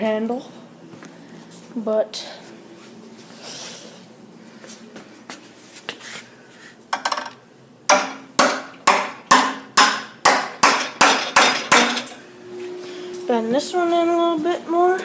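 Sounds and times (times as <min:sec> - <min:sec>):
hammer striking metal: 0:07.9 - 0:12.1.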